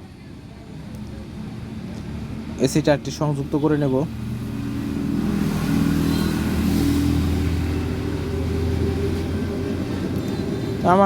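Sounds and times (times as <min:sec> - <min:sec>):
vehicle engine revving past: 0:04.1 - 0:11.0.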